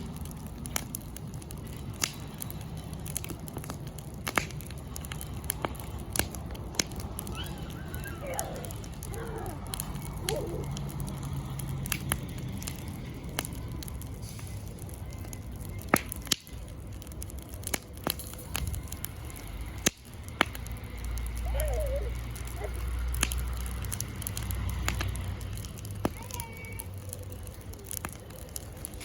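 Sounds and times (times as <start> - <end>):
campfire crackling: 0.0 - 29.0
fire popping: 0.0 - 29.0.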